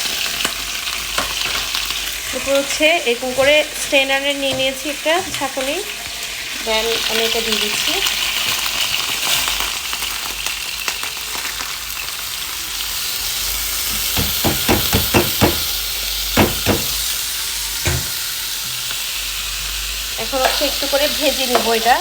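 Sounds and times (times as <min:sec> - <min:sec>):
rice sizzling in hot oil: 0:00.0 - 0:22.0
spoon knocking on pot: 0:13.9 - 0:15.8, 0:16.4 - 0:17.1, 0:17.9 - 0:18.2.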